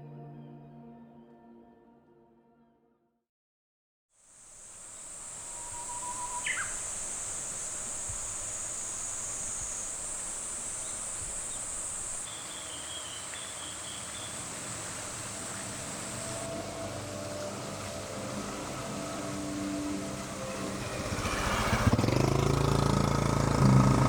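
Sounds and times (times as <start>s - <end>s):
insects droning: 4.2s - 24.0s
shallow stream rushing: 4.4s - 24.0s
bird chirps: 5.0s - 14.8s.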